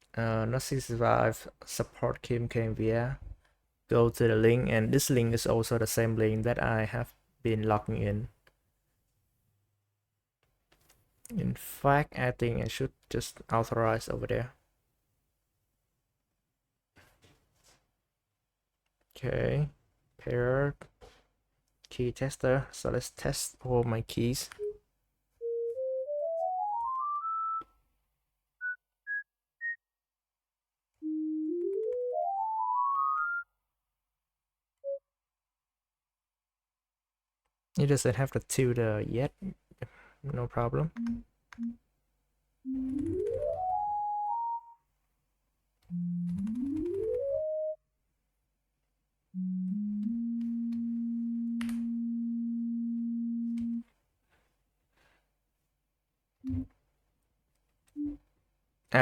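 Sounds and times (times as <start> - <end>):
electronic beep tones: 56.5 - 56.7.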